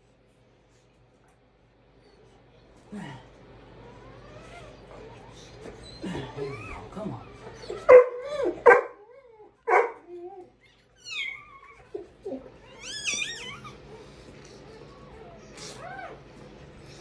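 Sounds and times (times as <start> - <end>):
puppy crying and yelping: 3.8 - 16.4
puppy whining and squealing: 3.8 - 17.0.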